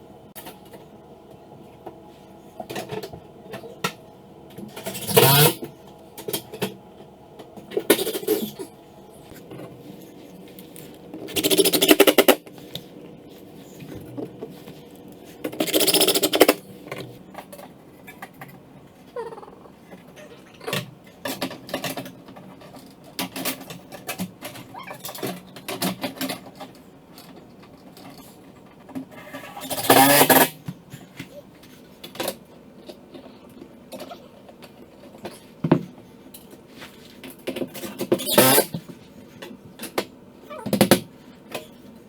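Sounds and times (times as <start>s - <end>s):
handling clicks and clatter: 20.7s - 30.3s.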